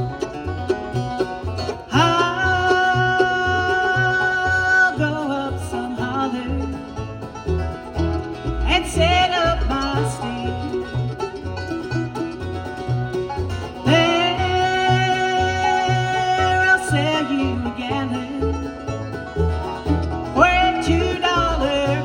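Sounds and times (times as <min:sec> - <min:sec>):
banjo: 0:00.0 - 0:22.0
guitar: 0:00.0 - 0:22.0
steady bass line: 0:00.0 - 0:22.0
person singing long notes: 0:01.9 - 0:06.8, 0:08.5 - 0:10.9, 0:13.8 - 0:18.6, 0:20.4 - 0:22.0.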